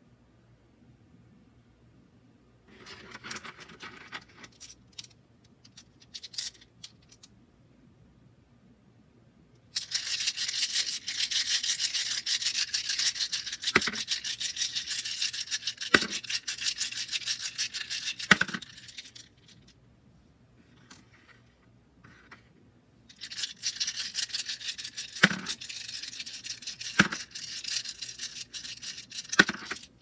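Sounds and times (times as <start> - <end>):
dice rattling: 2.7 - 7.3, 9.8 - 19.7, 23.1 - 30.0
sharp dice clacks: 15.8 - 16.2, 26.7 - 29.9.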